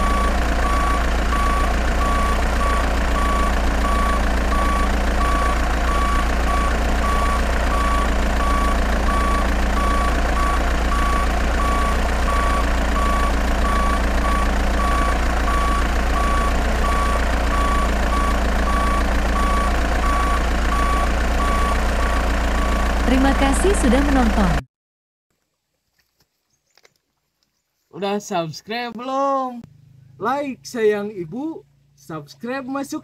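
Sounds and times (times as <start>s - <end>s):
low engine hum: 0.0s - 24.6s, 29.3s - 33.0s
reversing beeper: 0.0s - 24.6s.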